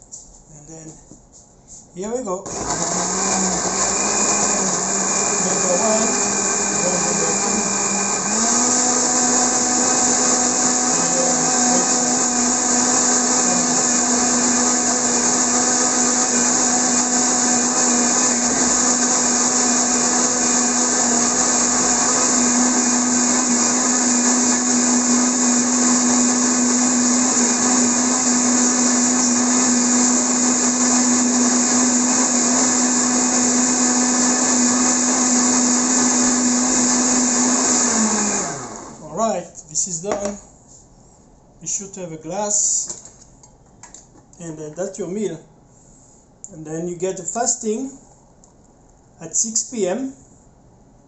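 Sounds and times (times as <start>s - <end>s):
blender motor whining: 2.4s - 39.3s.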